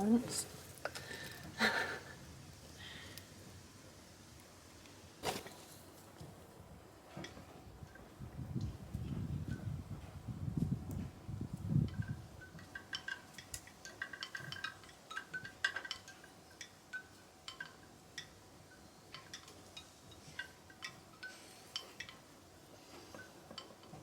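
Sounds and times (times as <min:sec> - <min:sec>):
small hard objects clinking: 0:12.0 - 0:22.2.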